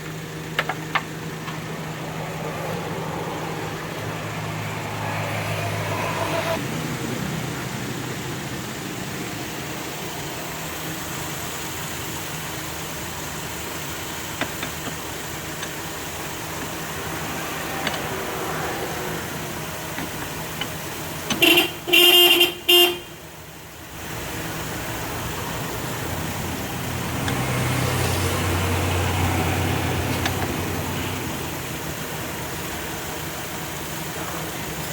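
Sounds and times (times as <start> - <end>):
low engine hum: 0.0 - 34.9
vehicle and workshop noise: 0.0 - 34.9
car horn honks: 21.3 - 23.2.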